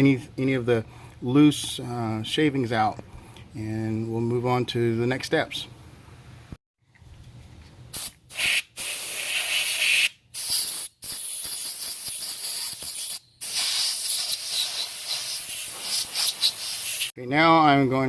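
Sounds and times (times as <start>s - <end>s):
compressed air can hissing: 7.9s - 17.1s.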